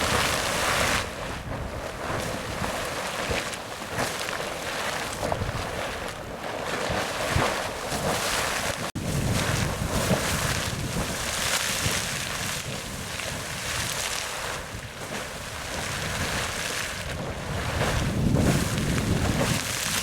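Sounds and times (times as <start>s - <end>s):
geyser water splashing: 0.0s - 20.0s.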